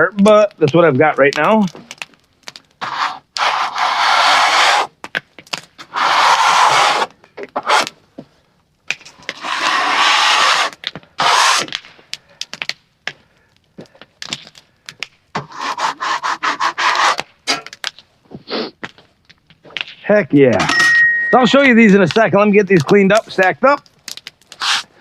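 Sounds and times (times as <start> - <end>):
wood scraping and rubbing: 2.8 - 4.9, 5.8 - 7.9, 9.1 - 11.8, 15.4 - 18.7, 24.4 - 24.9.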